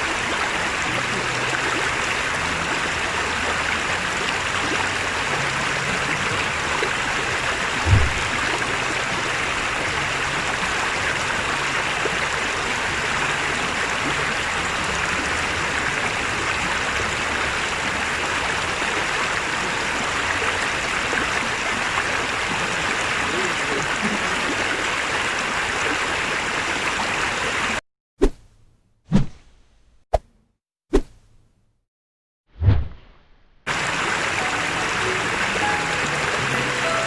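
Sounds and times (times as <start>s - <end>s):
water rushing over rocks: 0.0s - 27.8s, 33.7s - 37.0s
low thump: 7.8s - 8.5s.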